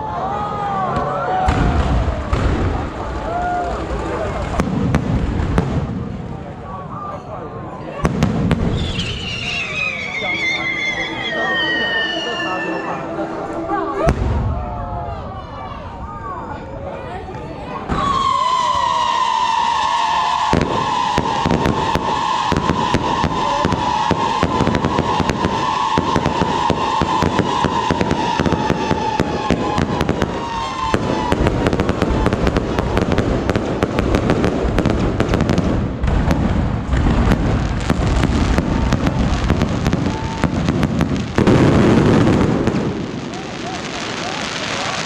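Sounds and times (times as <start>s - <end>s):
fireworks crackling and banging: 0.7s - 15.2s, 17.3s - 45.0s.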